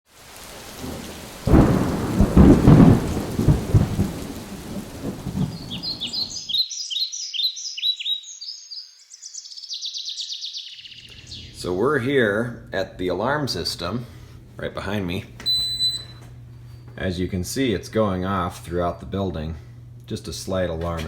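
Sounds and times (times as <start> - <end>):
rain hissing: 0.1 - 6.5
thunder rumbling: 0.5 - 6.4
birds chirping: 5.0 - 12.0, 15.4 - 16.2.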